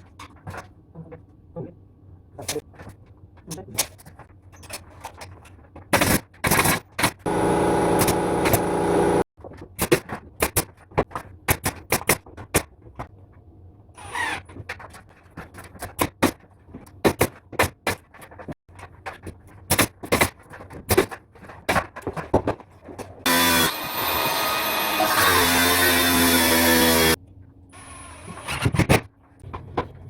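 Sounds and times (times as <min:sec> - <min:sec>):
pneumatic nail gun firing: 0:06.0 - 0:09.2, 0:28.1 - 0:29.1
loud steady machine noise: 0:07.3 - 0:09.2, 0:23.3 - 0:27.2.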